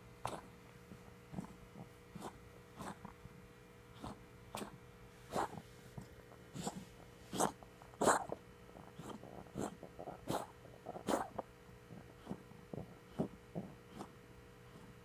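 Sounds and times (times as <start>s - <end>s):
pet coughing: 1.3s - 3.1s, 4.0s - 5.6s, 6.5s - 11.4s, 12.2s - 14.1s.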